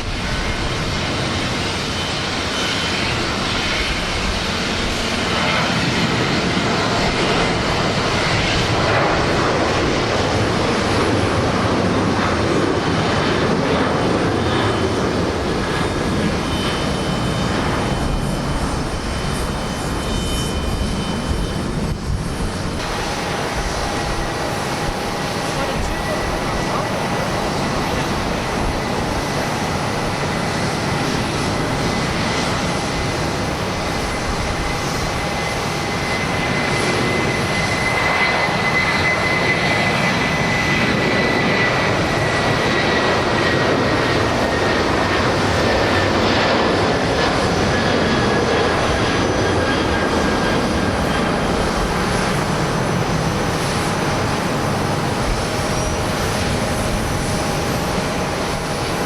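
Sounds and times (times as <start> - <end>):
jet engines roaring: 0.0 - 59.0
high fan whine: 21.2 - 35.4.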